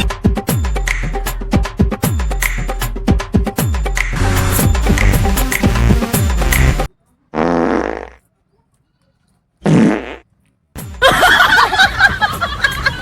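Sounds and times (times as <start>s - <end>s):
music: 0.0s - 6.9s, 10.8s - 13.0s
fake fart sounds: 7.3s - 8.2s, 9.6s - 10.3s.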